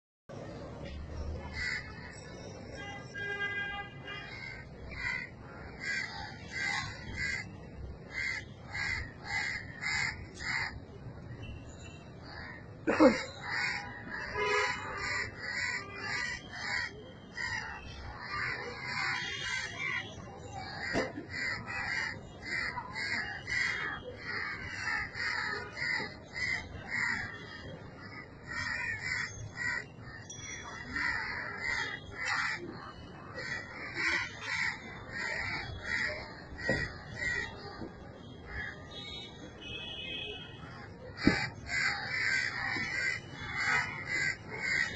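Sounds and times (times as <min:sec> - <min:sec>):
crows cawing: 0:01.5 - 0:02.1, 0:04.3 - 0:07.5, 0:08.1 - 0:10.8, 0:12.3 - 0:20.0, 0:20.6 - 0:37.8, 0:40.7 - 0:44.9.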